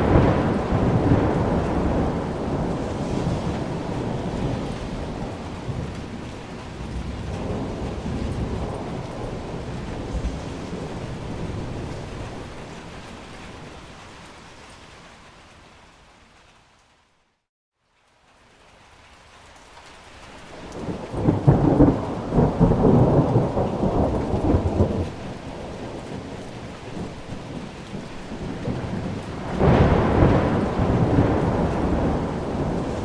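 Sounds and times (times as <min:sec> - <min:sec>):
thunder rolling: 0:00.0 - 0:13.8, 0:20.6 - 0:33.0
steady rain: 0:00.0 - 0:33.0.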